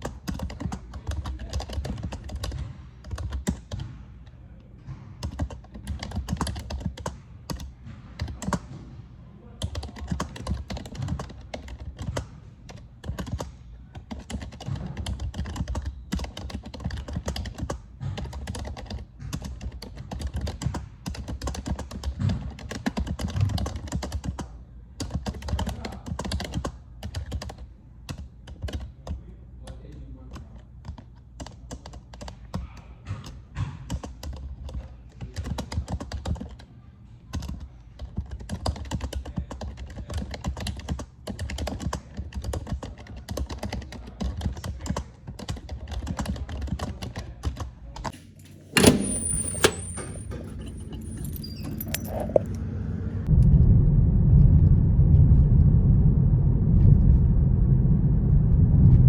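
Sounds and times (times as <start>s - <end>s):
computer keyboard typing: 0.0s - 3.6s, 37.4s - 47.6s.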